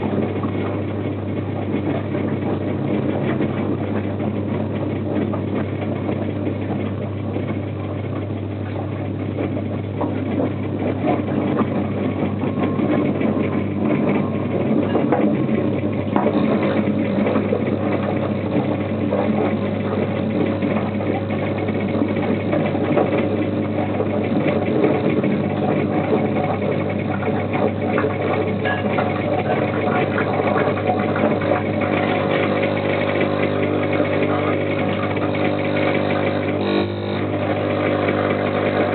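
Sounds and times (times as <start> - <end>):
electric air compressor humming: 16.2 - 38.9.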